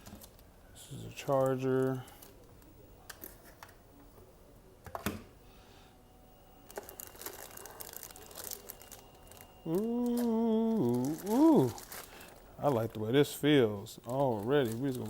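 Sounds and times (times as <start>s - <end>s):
plastic packaging crinkling: 6.7s - 13.1s, 14.0s - 15.0s.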